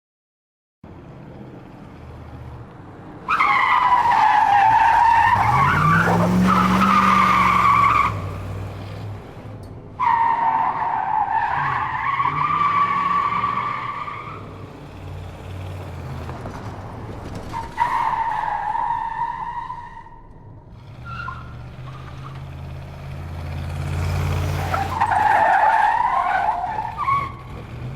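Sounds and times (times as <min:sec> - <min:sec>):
car engine revving: 0:03.7 - 0:09.5, 0:20.3 - 0:27.9
tyres squealing: 0:24.6 - 0:27.6.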